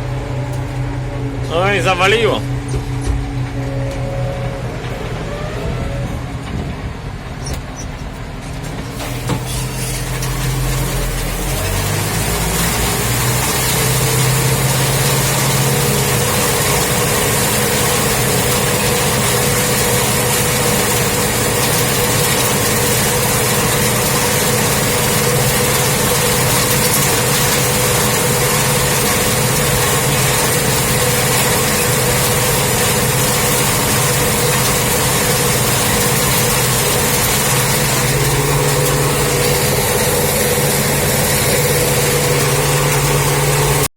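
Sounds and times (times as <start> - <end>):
machinery noise: 0.0 - 43.9
tractor engine running: 0.0 - 43.9.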